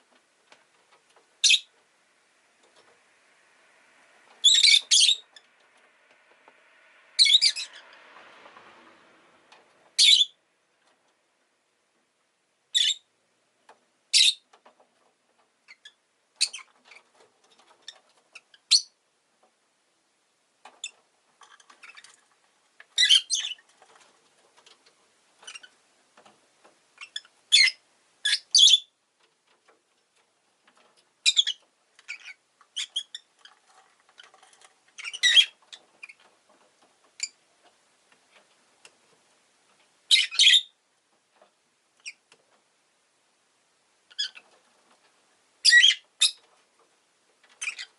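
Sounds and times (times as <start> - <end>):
bird high-pitched chirps: 1.4 - 1.7, 4.4 - 5.5, 7.2 - 7.8, 10.0 - 10.4, 12.8 - 13.0, 14.1 - 14.4, 18.6 - 19.0, 23.0 - 23.6, 27.0 - 28.9, 35.0 - 36.2, 40.1 - 40.7, 45.6 - 46.4.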